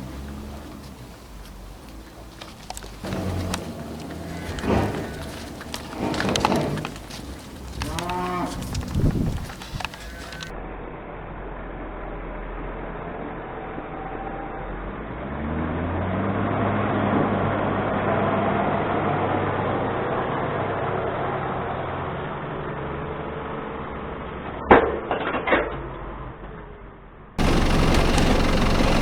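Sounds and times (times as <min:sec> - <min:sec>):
vehicle engine running: 0:00.0 - 0:10.5, 0:27.4 - 0:29.0.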